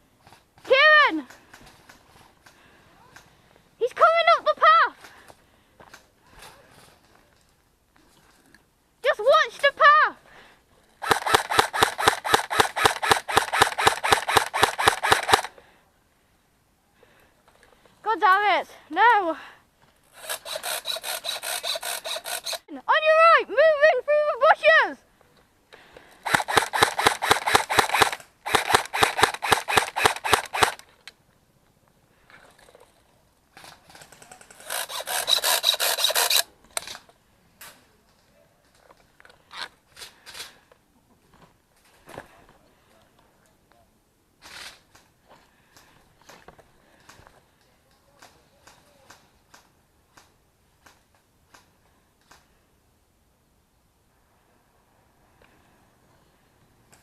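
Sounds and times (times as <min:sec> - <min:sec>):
airsoft gun rapid firing: 0:11.0 - 0:15.5, 0:20.2 - 0:22.6, 0:26.2 - 0:30.8, 0:34.6 - 0:36.5.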